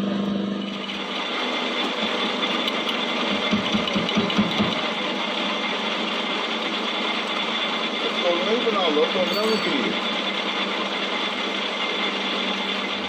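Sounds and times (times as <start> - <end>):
power tool running: 0.7 - 13.0.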